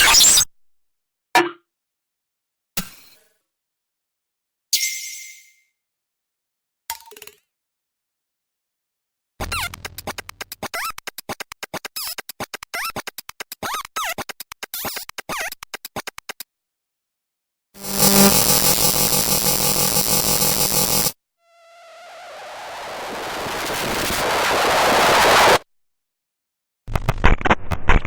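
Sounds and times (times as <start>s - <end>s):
glitchy stutter of clicks: 9.4s - 10.7s, 17.8s - 21.2s, 26.9s - 28.0s
harsh distorted buzz: 17.8s - 25.6s.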